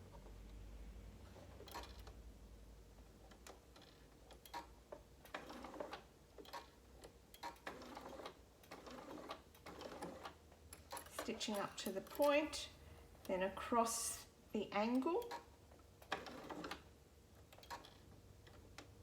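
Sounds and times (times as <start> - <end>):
sewing machine motor hum: 3.2 - 12.2, 16.0 - 19.0.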